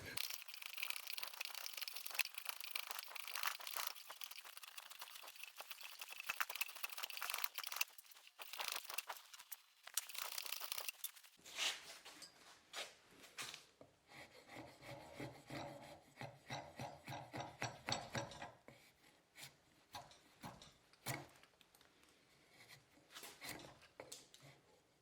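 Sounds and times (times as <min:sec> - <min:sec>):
blade scraping wood: 0:00.0 - 0:11.4.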